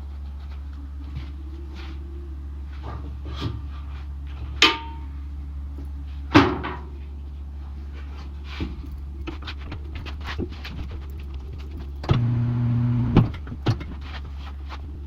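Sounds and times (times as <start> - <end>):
steady low hum: 0.0 - 15.0
metal clanks and knocks: 4.4 - 5.1, 6.3 - 7.0.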